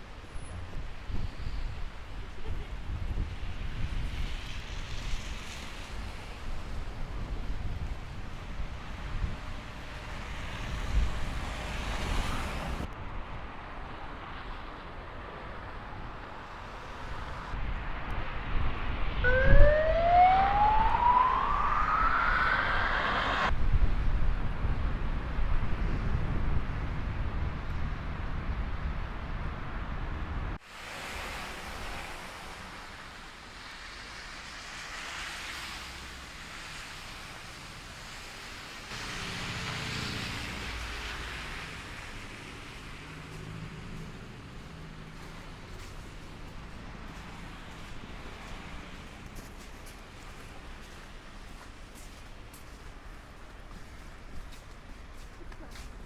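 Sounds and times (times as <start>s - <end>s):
rumble of vehicles: 0.0s - 56.0s
wind: 0.0s - 56.0s
whine rising in pitch: 19.2s - 23.5s.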